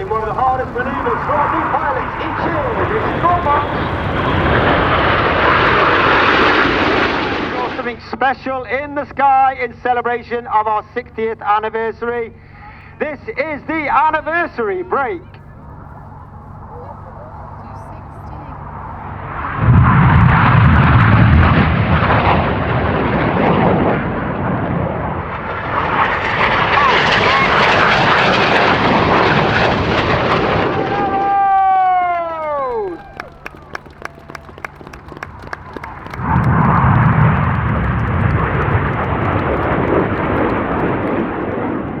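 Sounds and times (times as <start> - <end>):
jets roaring past low: 0.0 - 42.0
low steady hum: 0.0 - 42.0
sharp claps: 31.1 - 42.0.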